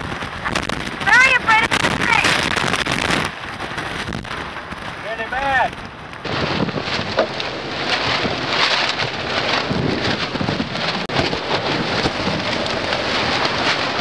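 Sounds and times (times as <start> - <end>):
heavy rain hiss: 0.0 - 8.1
wind gusts: 0.0 - 14.0.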